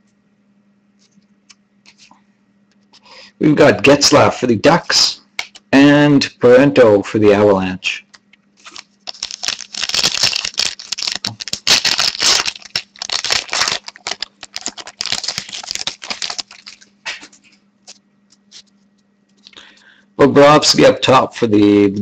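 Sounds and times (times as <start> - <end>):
cards being handled: 1.0 - 2.2, 8.1 - 19.6
foil wrapper crinkling and tearing: 8.6 - 18.7.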